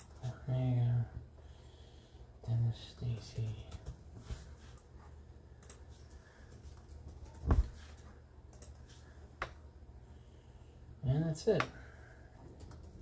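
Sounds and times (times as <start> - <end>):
computer keyboard typing: 3.0 - 4.0, 5.6 - 8.8, 12.4 - 13.0.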